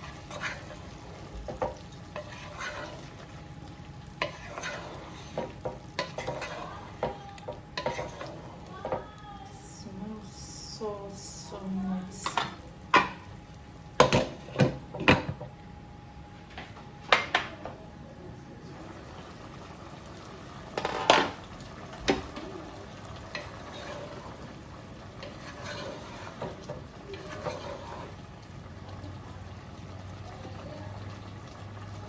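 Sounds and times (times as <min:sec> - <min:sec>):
utensil scraping cooking pot: 0:00.0 - 0:03.4, 0:04.1 - 0:09.0, 0:20.8 - 0:21.4, 0:23.2 - 0:28.4
pot simmering hiss: 0:00.0 - 0:15.8, 0:17.1 - 0:32.0.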